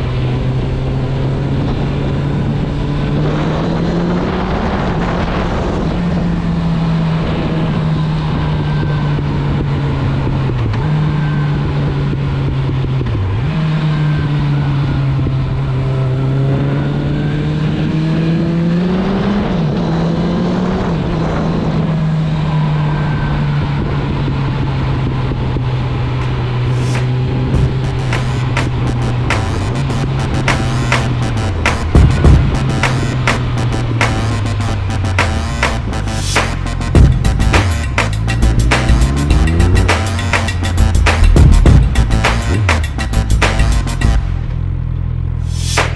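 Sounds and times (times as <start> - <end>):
motorcycle engine running: 25.3 - 45.4.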